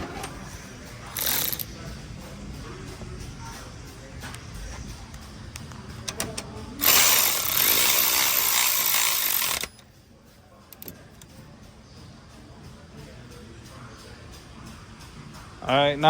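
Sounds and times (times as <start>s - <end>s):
power tool driving a bolt: 1.2s - 1.6s, 6.1s - 9.7s.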